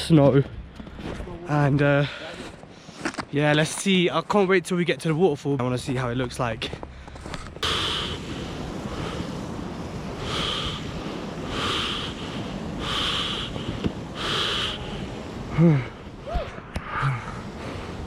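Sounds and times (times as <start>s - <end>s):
heavy breathing: 2.0s - 3.2s, 6.8s - 9.5s, 10.2s - 16.0s
person grunting: 15.5s - 16.0s.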